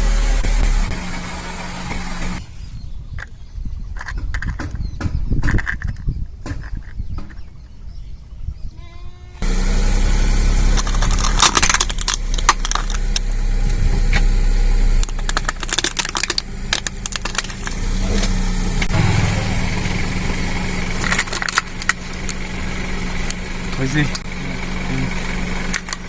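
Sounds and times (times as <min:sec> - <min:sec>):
car motor running: 0:00.0 - 0:02.8, 0:09.4 - 0:26.0
objects crackling under tires: 0:10.4 - 0:19.0, 0:19.6 - 0:26.0.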